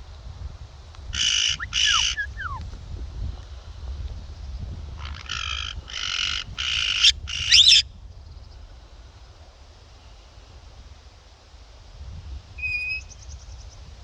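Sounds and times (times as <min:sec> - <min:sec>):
wind rumbling on microphone: 0:00.0 - 0:14.0
bird screeching: 0:01.2 - 0:02.6, 0:05.0 - 0:07.8.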